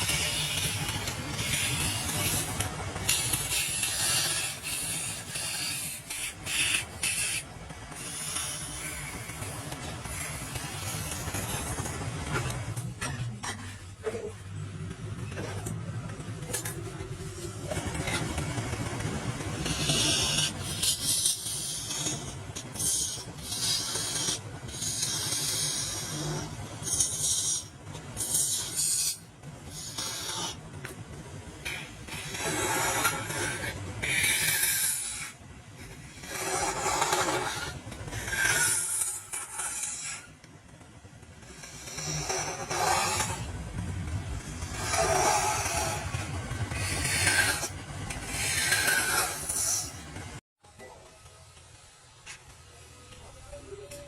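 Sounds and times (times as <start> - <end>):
wood being scraped: 0.0 - 12.6, 17.8 - 30.6, 31.7 - 40.4, 41.4 - 43.6, 44.2 - 50.2.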